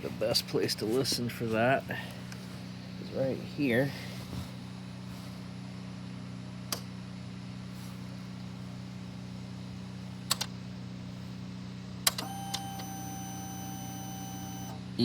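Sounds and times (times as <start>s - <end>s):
fuel pump whine: 0.0s - 15.0s
steady low hum: 0.0s - 15.0s
sharp clicks: 6.7s - 6.9s, 10.3s - 10.6s, 12.0s - 12.6s.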